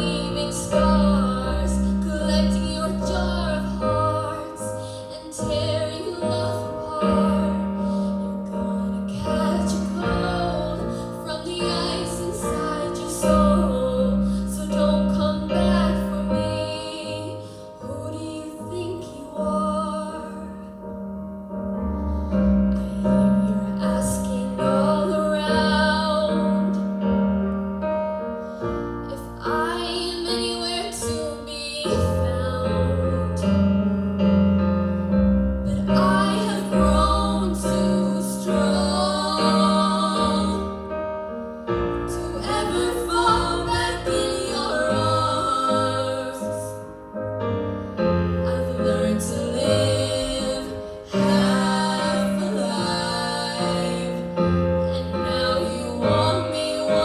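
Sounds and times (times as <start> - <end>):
woman singing pop ballad: 0.0 - 20.6
piano: 0.0 - 57.0.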